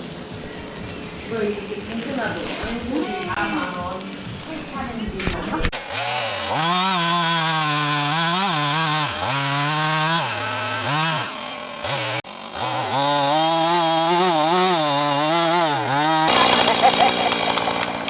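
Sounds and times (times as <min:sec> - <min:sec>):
chainsaw revving: 0:05.7 - 0:18.0.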